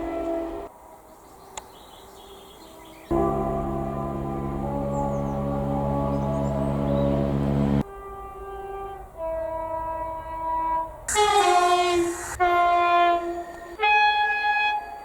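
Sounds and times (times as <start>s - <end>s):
train horn blasts: 3.1s - 15.0s.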